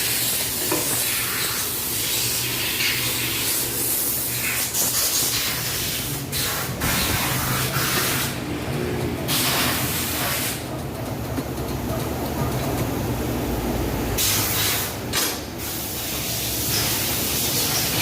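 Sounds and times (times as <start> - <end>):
air hissing: 0.0 - 8.4, 14.2 - 18.0.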